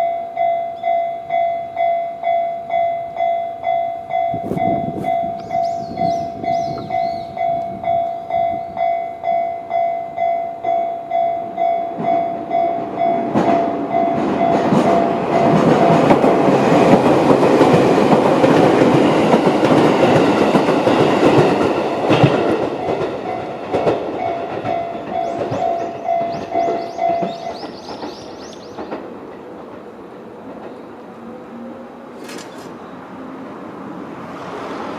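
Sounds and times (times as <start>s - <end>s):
train wheels clacking over rail joints: 13.2s - 30.8s.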